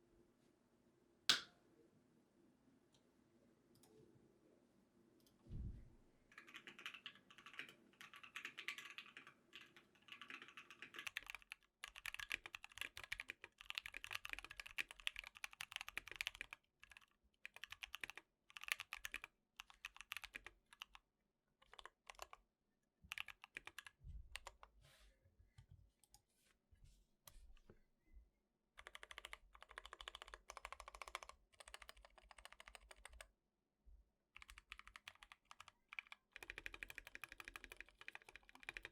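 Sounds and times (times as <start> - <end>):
mechanical keyboard typing: 6.3 - 21.0, 21.6 - 22.4, 23.1 - 24.6, 28.8 - 33.3, 34.4 - 38.9.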